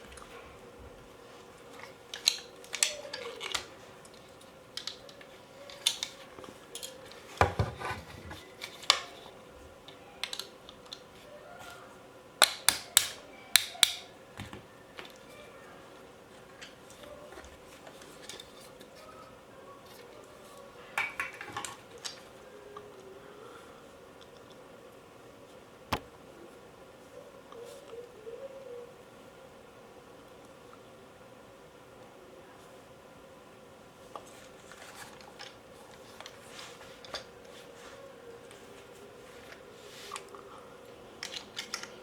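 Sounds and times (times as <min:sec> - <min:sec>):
small parts clicking and clinking: 0:01.6 - 0:07.4, 0:08.3 - 0:11.1, 0:41.2 - 0:42.0.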